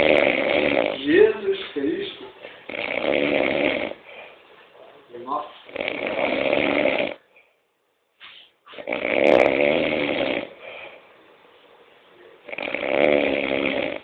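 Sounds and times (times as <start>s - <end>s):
man snoring heavily: 0.0s - 1.2s, 2.7s - 4.1s, 5.7s - 7.2s, 8.8s - 10.9s, 12.5s - 14.0s.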